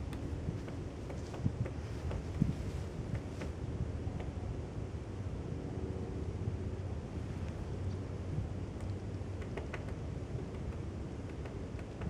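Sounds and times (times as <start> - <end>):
wind buffeting microphone: 0.0 - 4.7.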